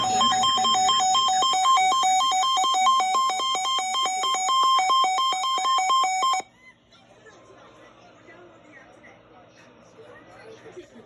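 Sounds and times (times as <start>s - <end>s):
electronic two-pitch beeping: 0.0s - 6.4s.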